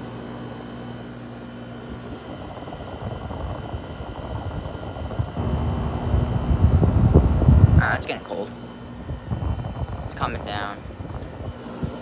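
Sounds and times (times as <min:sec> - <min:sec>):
air conditioner hum: 0:00.0 - 0:12.0
gusty rumble of moving air: 0:01.9 - 0:12.0.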